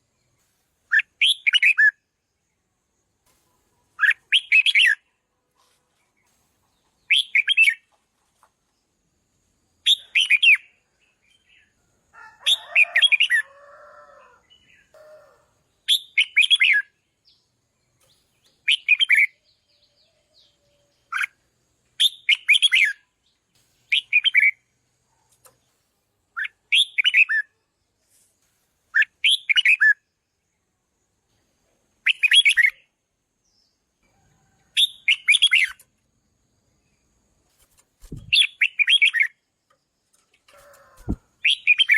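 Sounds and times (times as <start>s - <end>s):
bulbul whistled song: 0.9s - 2.0s, 32.0s - 32.8s, 38.1s - 39.4s, 41.0s - 41.9s.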